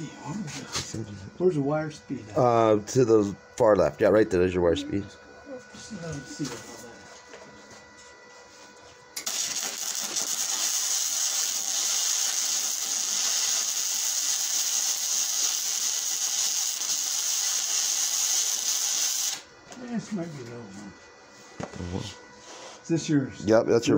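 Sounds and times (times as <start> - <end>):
welding arc crackling hiss: 9.2 - 19.5.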